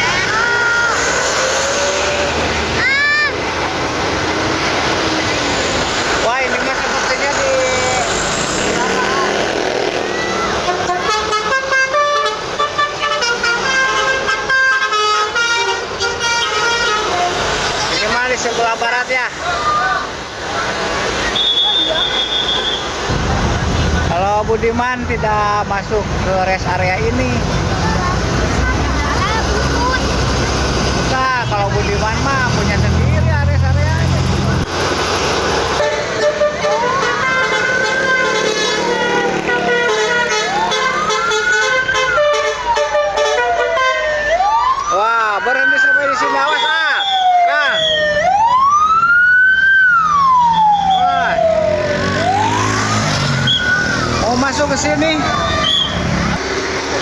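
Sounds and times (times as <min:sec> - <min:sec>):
siren-like rising and falling tone: 0:00.0 - 0:02.8, 0:44.0 - 0:56.6
bus musical horn playing tune: 0:10.6 - 0:17.4, 0:35.8 - 0:44.1.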